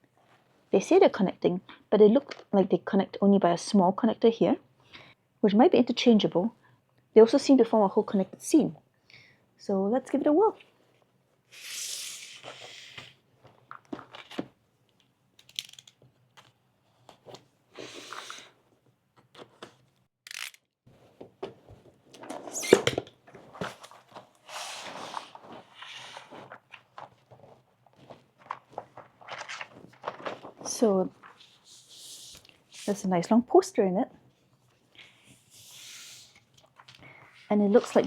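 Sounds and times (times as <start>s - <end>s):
cardboard and paper rustling: 23.3s - 31.7s.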